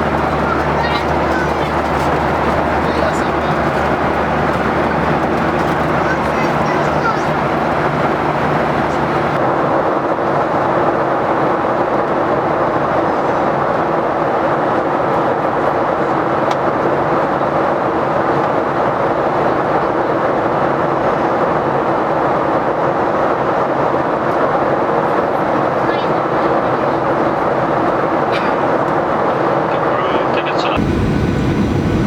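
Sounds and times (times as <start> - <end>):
low hum: 0.0 - 9.4, 30.8 - 32.0
airplane cabin engine rush: 0.0 - 32.0.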